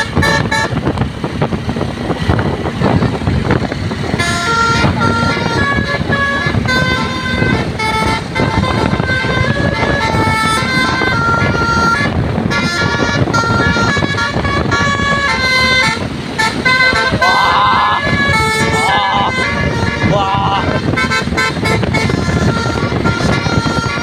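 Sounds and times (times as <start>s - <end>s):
bus horn playing a melody: 0.0s - 24.0s
rumble of bus and street: 0.0s - 24.0s.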